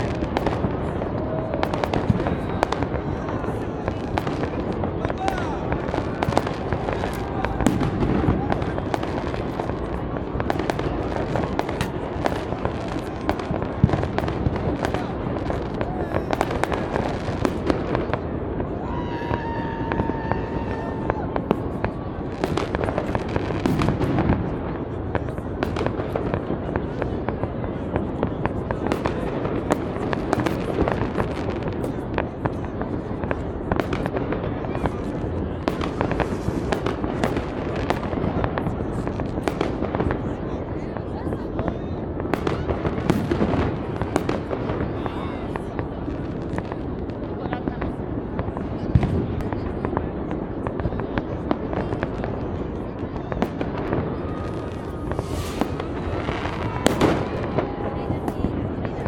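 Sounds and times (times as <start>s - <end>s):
distant explosions rumbling: 0.0s - 59.0s
fireworks bangs and crackles: 0.0s - 59.0s
fireworks hissing: 35.8s - 38.0s, 53.4s - 59.0s.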